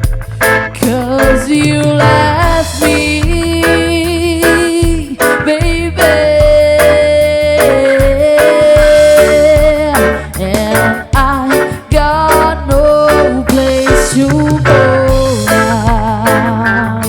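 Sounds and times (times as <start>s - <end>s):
lead vocalist singing: 0.0s - 17.0s
reggae band playing: 0.0s - 17.0s.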